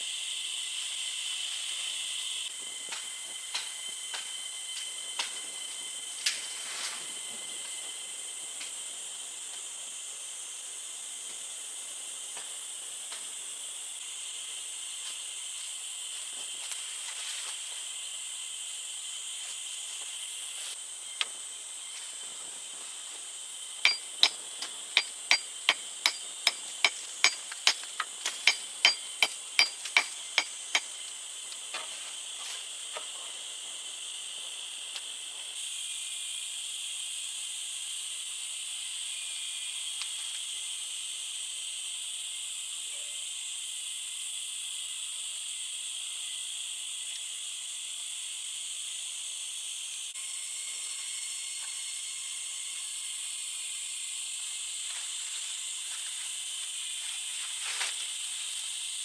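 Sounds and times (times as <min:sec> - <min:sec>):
insect drone: 0:00.0 - 0:59.0
sharp knocks: 0:23.9 - 0:24.4, 0:25.0 - 0:30.9.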